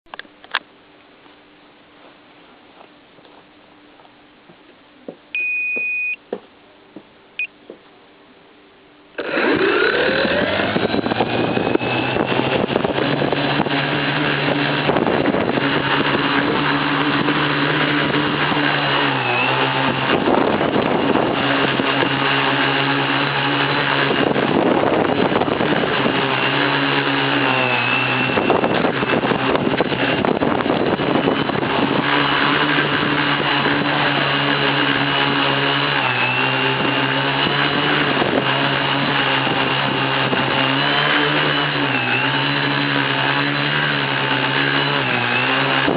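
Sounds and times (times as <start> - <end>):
short electronic beep: 5.4 - 6.3, 7.4 - 7.6
electric motors and propellers whining: 9.1 - 45.9.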